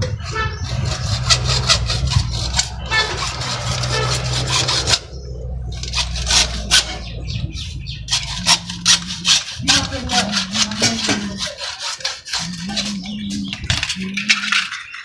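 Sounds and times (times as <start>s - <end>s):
steady low hum: 0.0s - 11.4s
hand tool rasping strokes: 0.0s - 15.0s.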